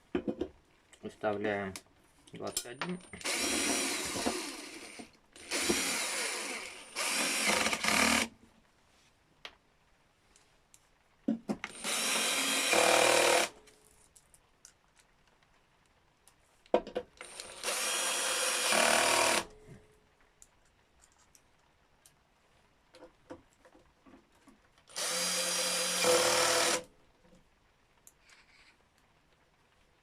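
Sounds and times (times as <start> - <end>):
power screwdriver driving screws: 3.2 - 8.3, 11.7 - 13.5, 17.2 - 19.5, 24.9 - 26.8.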